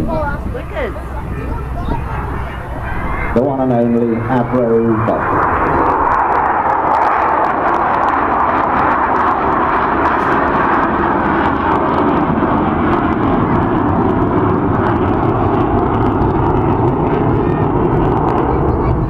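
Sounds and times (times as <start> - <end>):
jet engines roaring: 0.0 - 19.0.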